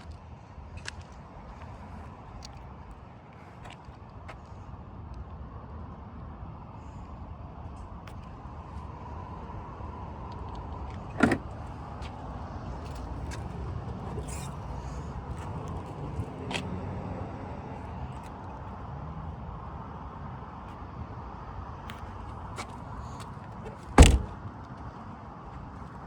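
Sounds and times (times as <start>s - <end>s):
car engine low rumble: 4.1s - 26.0s.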